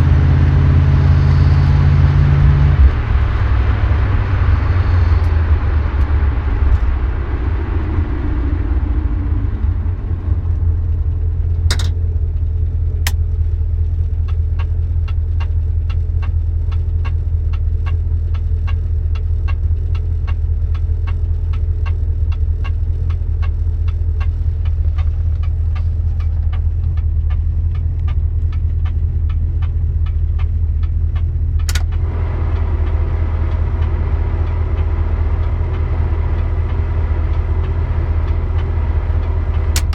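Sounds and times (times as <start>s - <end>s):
car drivetrain rumble: 0.0s - 39.9s
fast light ticking: 10.2s - 39.9s.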